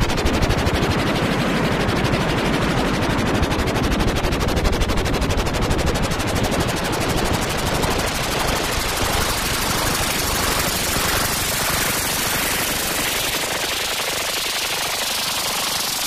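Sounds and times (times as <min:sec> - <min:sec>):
sci-fi rapid-fire weapon pulses: 0:07.0 - 0:16.0.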